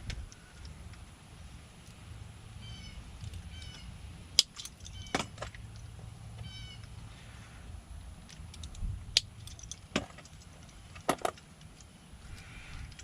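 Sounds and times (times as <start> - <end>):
metallic lock clicks and taps: 4.4 - 5.8.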